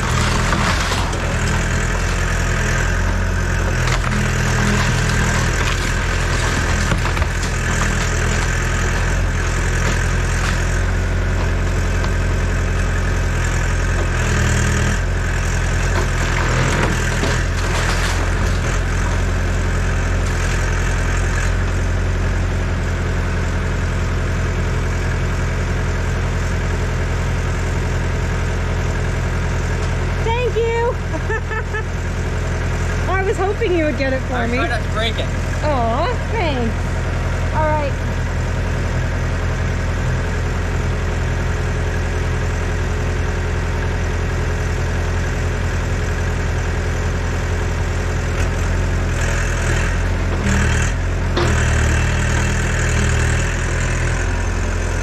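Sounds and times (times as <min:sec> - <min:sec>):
excavator diesel engine running: 0:00.0 - 0:55.0.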